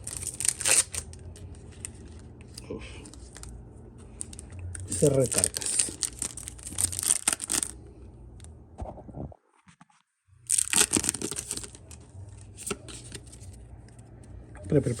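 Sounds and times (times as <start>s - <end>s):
foil pack tearing and rustling: 0.0s - 2.3s, 4.2s - 7.8s, 10.5s - 11.9s.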